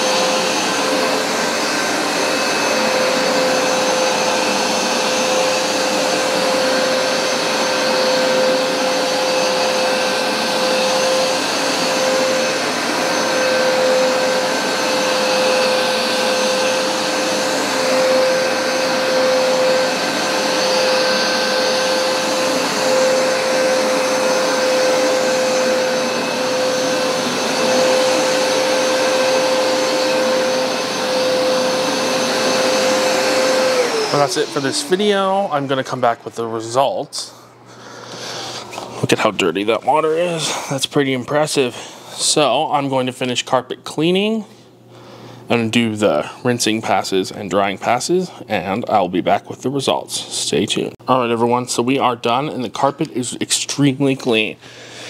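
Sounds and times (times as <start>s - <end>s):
carpet cleaner motor whine: 0.0s - 39.3s
rushing air and brush noise: 0.0s - 40.8s.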